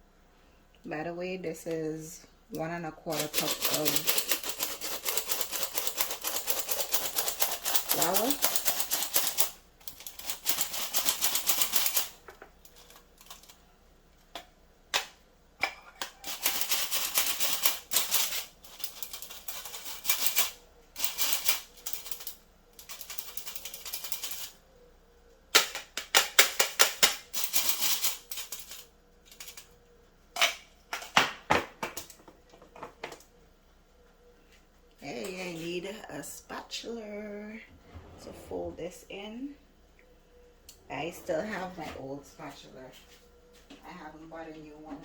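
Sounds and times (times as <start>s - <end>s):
flour sifter clicking rattle: 3.1s - 12.1s.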